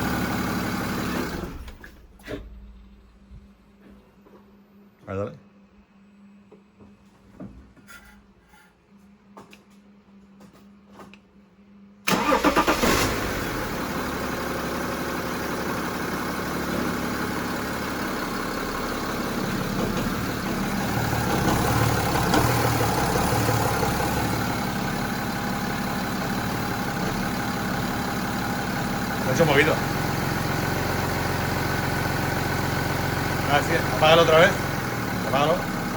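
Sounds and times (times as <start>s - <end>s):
diesel engine cranking and idling: 0.0s - 3.1s, 12.1s - 35.9s
engine rattle or knock: 13.5s - 35.9s.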